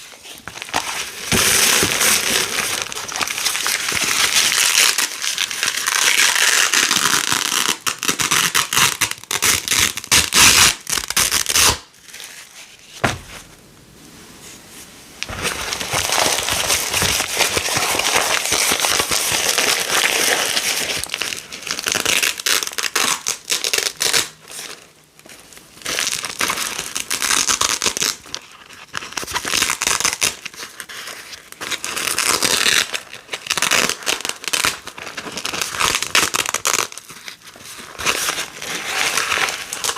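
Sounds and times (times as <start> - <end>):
velcro ripping: 0.0 - 12.4, 15.3 - 24.4, 31.8 - 37.0.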